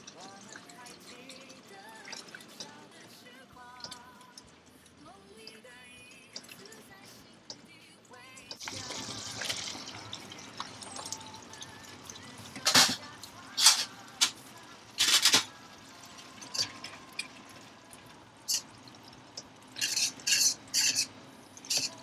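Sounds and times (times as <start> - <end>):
utensil scraping and knocking pan: 19.8 - 21.1.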